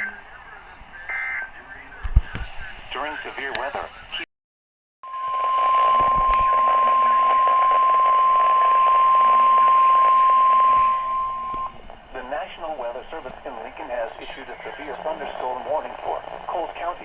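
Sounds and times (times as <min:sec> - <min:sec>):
radio hiss: 0:00.0 - 0:04.3, 0:05.1 - 0:17.0
steady alarm beep: 0:05.0 - 0:11.8.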